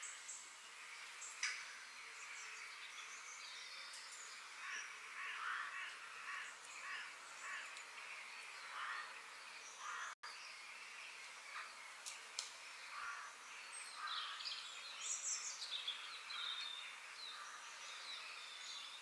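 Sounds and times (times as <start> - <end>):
background hiss: 0.0 - 19.0
harsh repeated bird calls: 3.9 - 10.2, 12.7 - 19.0.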